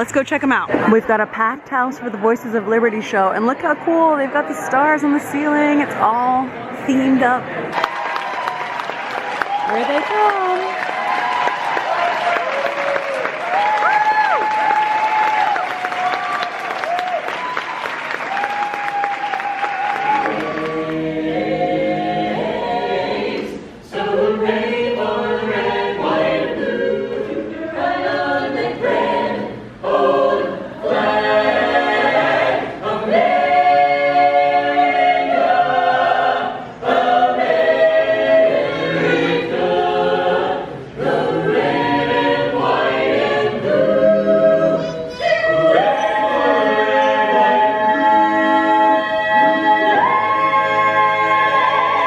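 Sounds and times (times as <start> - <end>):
a cappella choir singing: 19.3 - 52.0.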